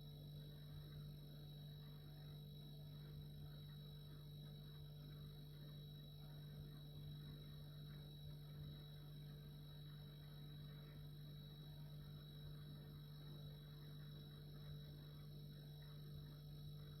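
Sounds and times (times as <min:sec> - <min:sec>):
refrigerator humming: 0:00.0 - 0:17.0.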